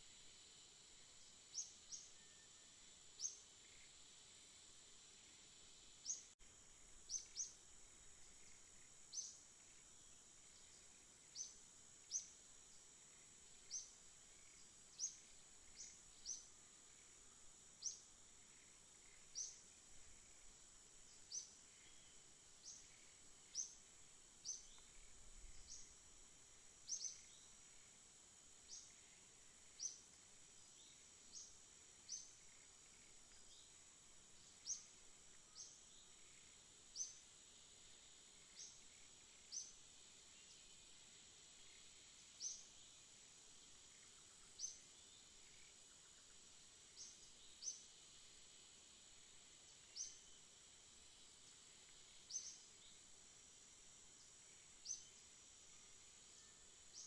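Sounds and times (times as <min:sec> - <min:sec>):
bird chirping: 0:26.8 - 0:27.6.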